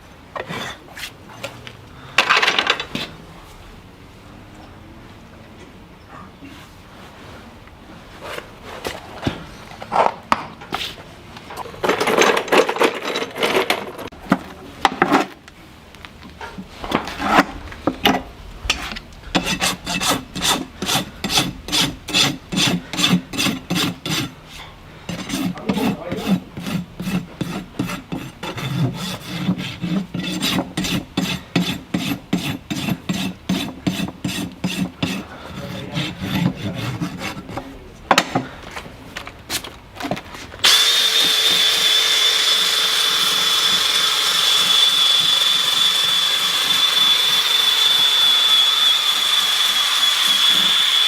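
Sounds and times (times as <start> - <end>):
rasp filing a hoof: 18.7 - 37.8, 40.6 - 51.0.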